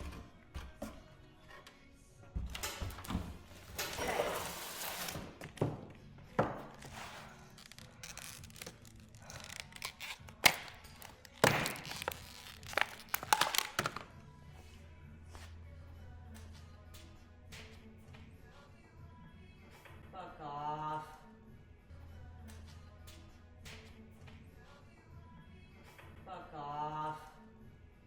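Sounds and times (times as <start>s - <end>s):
plastic parts scraping and rustling: 3.0s - 5.4s, 6.6s - 14.1s.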